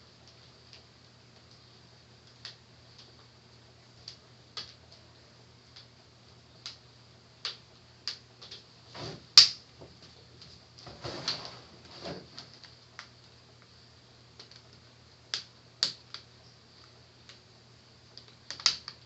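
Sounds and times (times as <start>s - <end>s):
sharp plastic snap: 9.4s - 9.6s, 18.5s - 19.0s
plastic rubbing: 10.8s - 12.7s.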